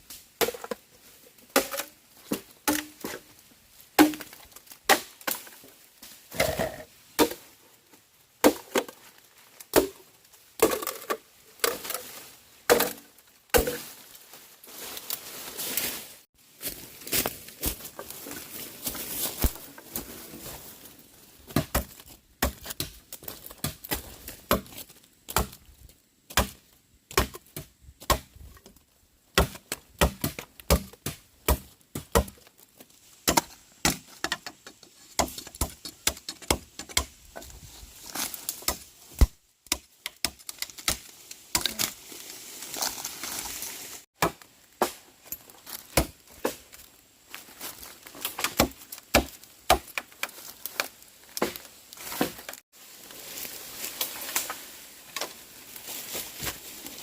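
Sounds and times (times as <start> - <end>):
sharp knocks and cracks: 1.5 - 3.2, 4.0 - 5.6, 21.5 - 25.6, 26.3 - 32.6, 33.2 - 37.5, 38.5 - 41.9, 45.8 - 46.7, 48.2 - 52.6.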